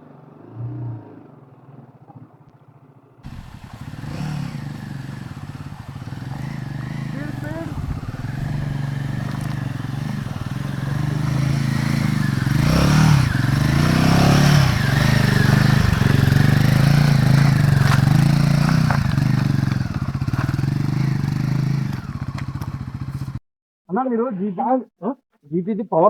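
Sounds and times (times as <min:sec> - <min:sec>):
motorcycle engine revving: 0:03.2 - 0:23.4.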